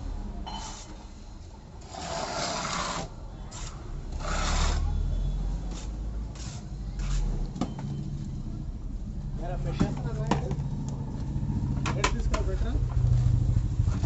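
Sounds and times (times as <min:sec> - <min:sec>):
hand tool scraping wall: 0:01.8 - 0:04.9.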